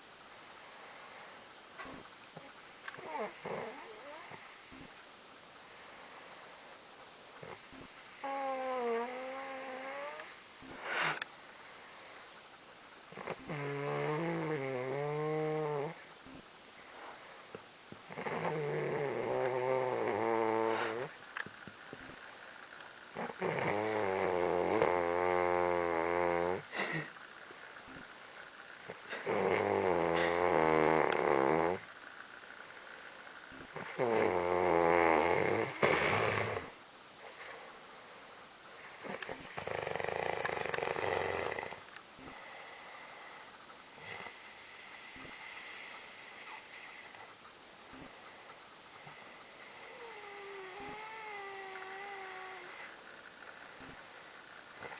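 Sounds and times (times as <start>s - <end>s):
quiet breathing: 0.0s - 54.9s
person snoring: 3.0s - 4.9s, 7.4s - 11.2s, 13.1s - 16.0s, 18.1s - 21.2s, 23.2s - 27.1s, 28.9s - 31.8s, 33.6s - 36.8s, 38.9s - 47.2s, 49.0s - 53.0s.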